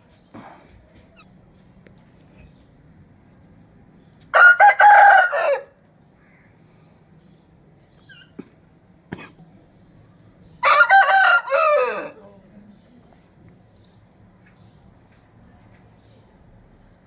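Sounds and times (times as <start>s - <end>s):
rooster crowing: 4.3s - 5.8s, 10.6s - 12.2s.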